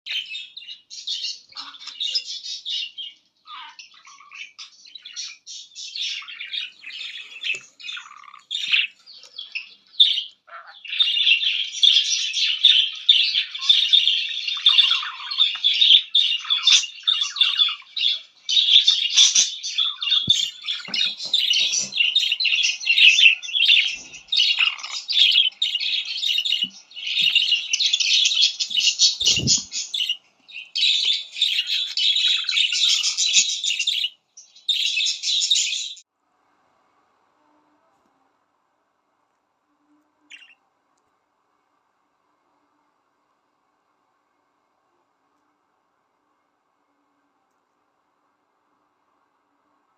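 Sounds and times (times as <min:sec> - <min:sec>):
budgerigar warbling and chattering: 0:00.1 - 0:34.1, 0:40.3 - 0:40.6.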